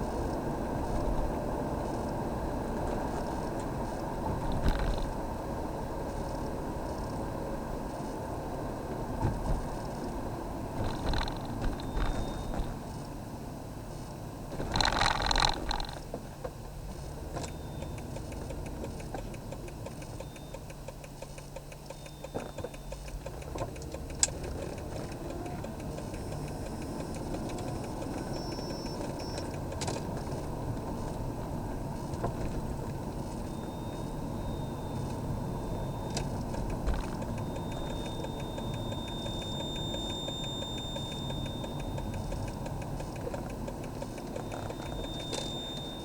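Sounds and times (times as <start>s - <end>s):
car road and engine noise: 0.0s - 46.0s
fast even ticking: 17.7s - 46.0s.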